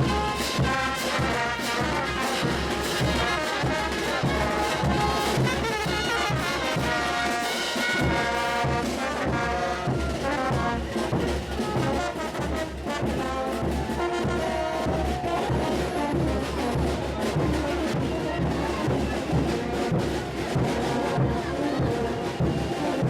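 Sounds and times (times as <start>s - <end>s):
brass band music: 0.0s - 23.0s
low drum beat: 8.2s - 23.0s.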